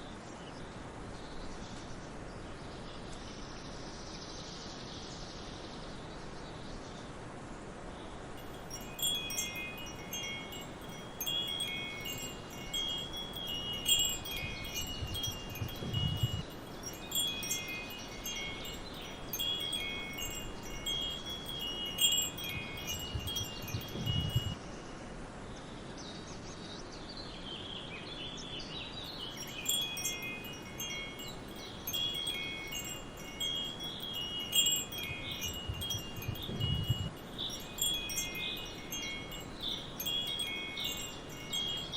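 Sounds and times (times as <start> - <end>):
faint forest ambience hiss: 0.0 - 41.9
wind chimes tinkling: 8.4 - 24.6, 29.0 - 41.9.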